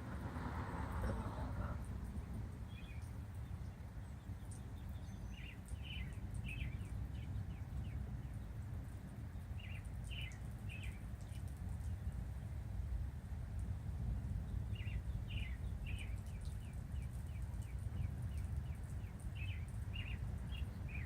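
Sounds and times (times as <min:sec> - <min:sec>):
bird chirping: 0:02.7 - 0:12.2, 0:14.5 - 0:21.0.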